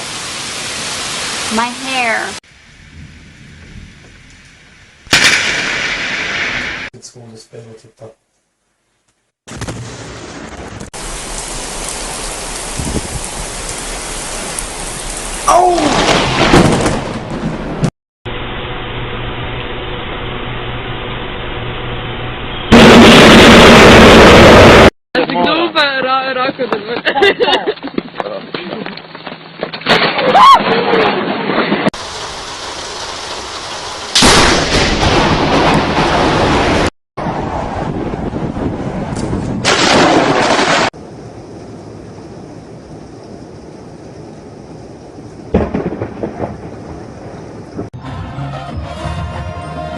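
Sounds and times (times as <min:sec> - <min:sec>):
heavy rain: 0:00.0 - 0:05.8, 0:09.8 - 0:18.5, 0:22.7 - 0:24.9, 0:30.4 - 0:47.9
wind: 0:00.0 - 0:49.9.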